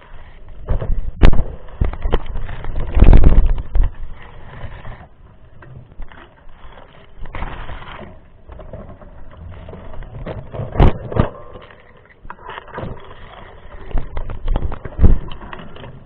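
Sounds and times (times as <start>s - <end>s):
mountain bike rattling over rough ground: 0.0s - 16.0s.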